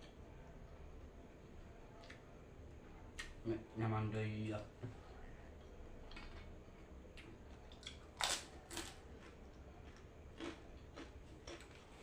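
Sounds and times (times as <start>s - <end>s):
food crunching while chewing: 6.1s - 12.0s.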